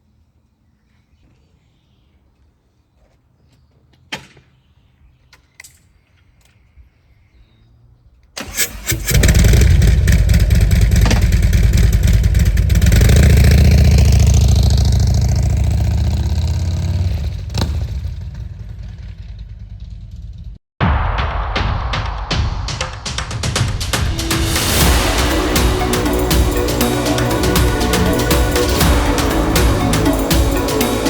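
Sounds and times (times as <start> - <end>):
motorcycle engine starting and running: 8.4 - 20.6, 24.0 - 31.0.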